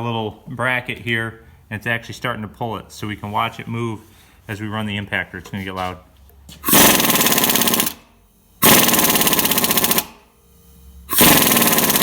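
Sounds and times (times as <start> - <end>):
pneumatic impact wrench hammering: 6.6 - 8.0, 8.6 - 10.3, 11.1 - 12.0.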